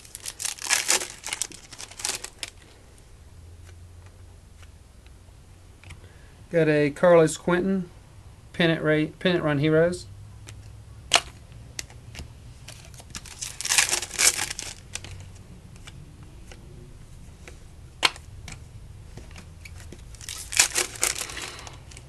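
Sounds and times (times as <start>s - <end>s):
foil wrapper crinkling and tearing: 0.0s - 2.6s, 12.7s - 15.2s, 20.1s - 22.0s
cards being shuffled: 0.0s - 2.7s, 10.5s - 22.0s.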